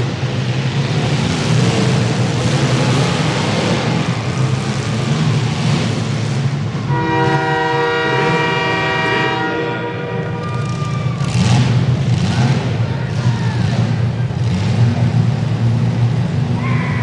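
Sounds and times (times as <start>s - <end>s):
car engines running loud: 0.0s - 17.0s
multi-note air horn: 6.9s - 10.4s.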